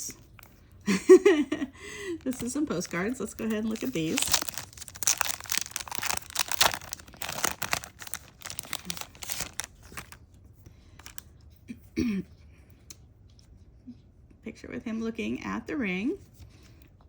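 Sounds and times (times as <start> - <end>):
packaging crinkling and tearing: 2.0 - 10.2, 11.0 - 11.3.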